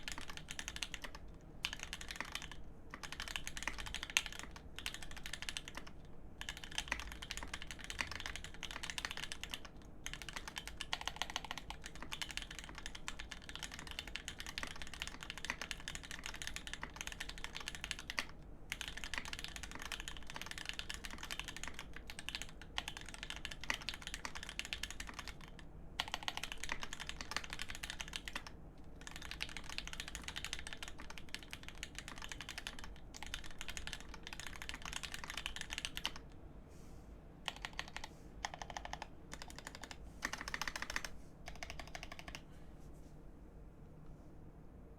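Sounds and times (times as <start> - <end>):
fast typing on mechanical keyboard: 0.0 - 36.3, 37.5 - 42.4.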